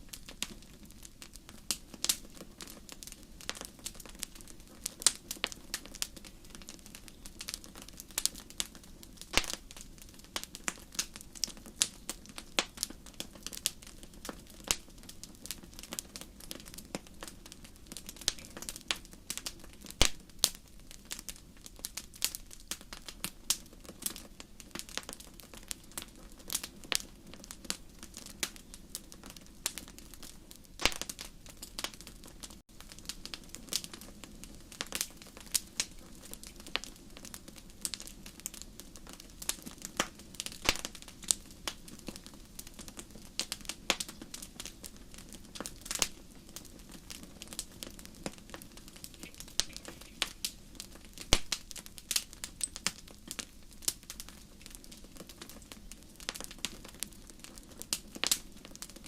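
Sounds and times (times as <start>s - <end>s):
fire crackling and popping: 0.0s - 59.0s.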